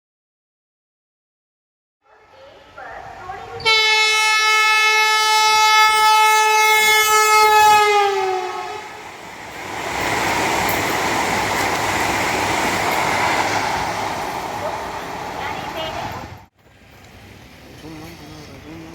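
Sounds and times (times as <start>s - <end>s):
train rushing past: 2.1s - 17.7s
train horn blast: 3.6s - 9.1s.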